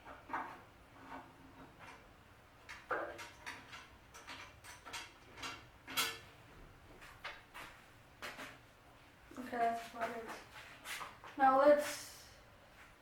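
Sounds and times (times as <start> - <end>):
small metal parts clicking and knocking: 0.0 - 6.3.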